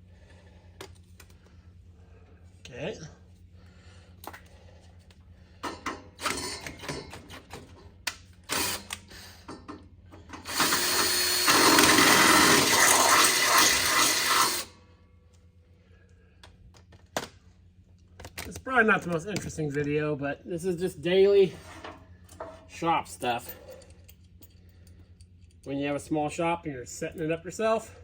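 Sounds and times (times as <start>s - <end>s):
battery drill running: 8.5s - 9.4s, 10.4s - 14.8s.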